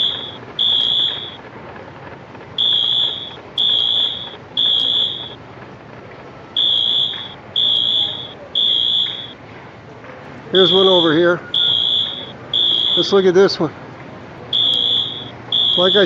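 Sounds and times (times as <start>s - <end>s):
fire alarm horn beeps: 0.0s - 1.4s, 2.6s - 5.4s, 6.6s - 9.4s, 10.6s - 13.2s, 14.5s - 16.0s.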